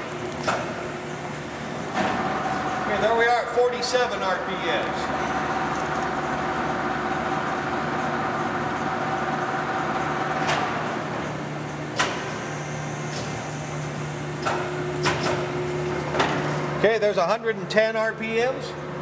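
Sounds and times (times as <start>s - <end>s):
lathe running with hum and whine: 0.0s - 17.4s.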